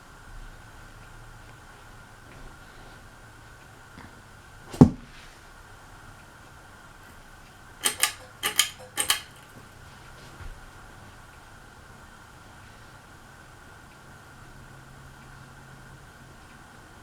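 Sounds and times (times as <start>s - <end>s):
clicks in pairs: 7.8s - 9.5s.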